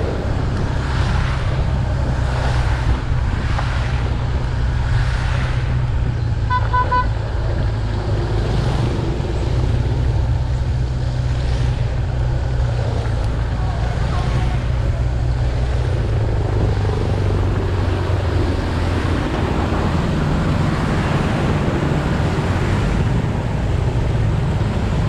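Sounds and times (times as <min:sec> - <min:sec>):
wind rumble: 0:00.0 - 0:25.0
vehicle horn beeps: 0:06.4 - 0:07.2.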